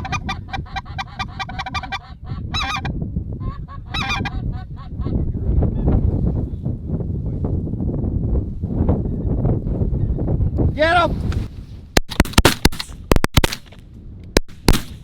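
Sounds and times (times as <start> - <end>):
geese honking: 0.0 - 4.7
wind buffeting microphone: 0.0 - 15.0.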